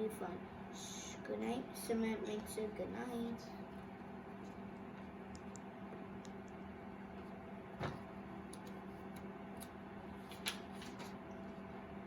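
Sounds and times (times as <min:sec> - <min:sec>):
steady low hum: 0:00.0 - 0:12.0
book pages rustling: 0:10.2 - 0:11.2.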